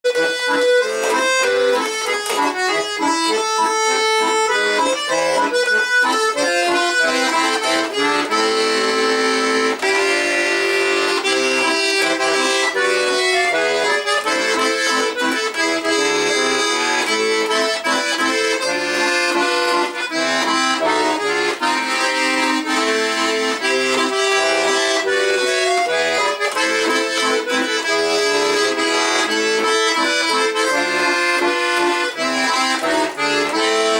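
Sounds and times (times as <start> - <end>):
button accordion melody: 0.0 - 33.9.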